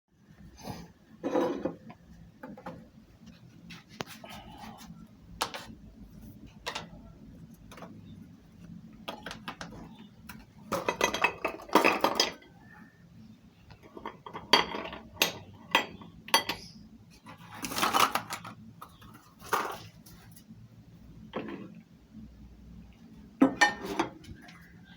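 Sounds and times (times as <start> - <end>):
metal and dishes clattering: 1.2 - 1.9, 9.1 - 12.5, 13.8 - 16.8, 23.4 - 24.7.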